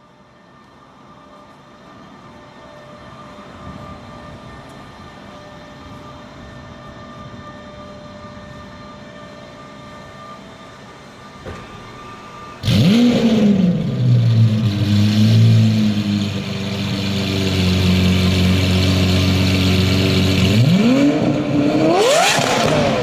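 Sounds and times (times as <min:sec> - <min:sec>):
car engine starting and idling: 0:12.6 - 0:23.0.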